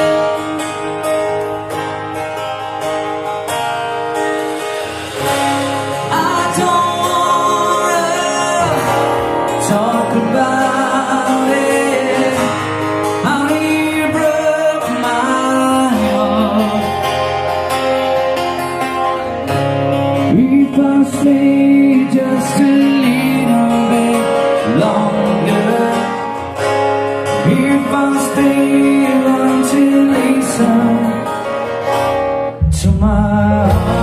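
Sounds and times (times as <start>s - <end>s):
picked acoustic guitar: 0.0s - 34.0s
person singing: 5.6s - 17.5s, 20.2s - 26.6s, 27.3s - 31.7s, 32.6s - 34.0s.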